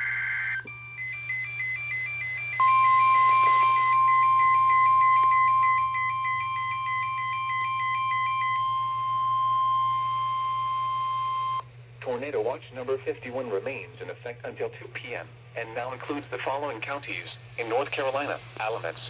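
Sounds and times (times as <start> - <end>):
steady single-pitch warning tone: 0.0 - 12.2
rapid two-pitch alert beeping: 1.9 - 10.2.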